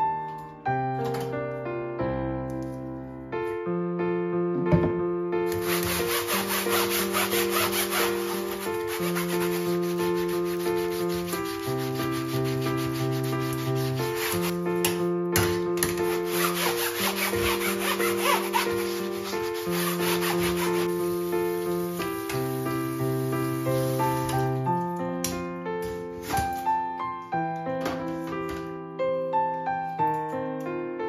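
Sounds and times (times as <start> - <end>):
soft background music: 0.0 - 31.0
scrubbing kitchen surface: 5.5 - 14.6, 16.0 - 24.6.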